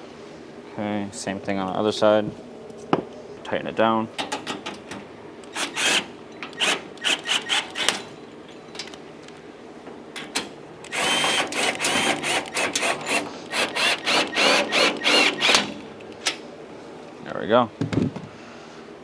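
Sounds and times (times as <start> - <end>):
ratchet wrench clicking: 10.9 - 16.2.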